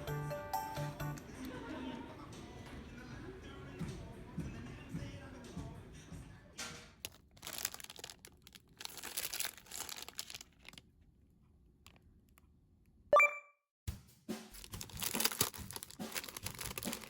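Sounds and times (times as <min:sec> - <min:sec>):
plastic packaging crinkling: 0:07.0 - 0:10.9, 0:14.6 - 0:17.0
loud pitched tone: 0:13.2 - 0:13.5.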